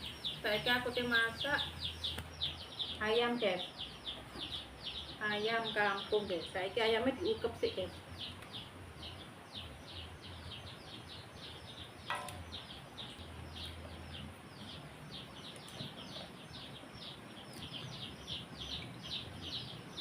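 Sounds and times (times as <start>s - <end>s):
small birds chirping: 0.0s - 20.0s.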